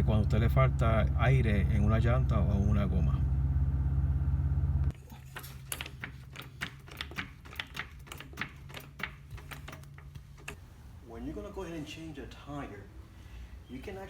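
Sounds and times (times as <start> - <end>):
car engine idling: 0.0 - 4.9.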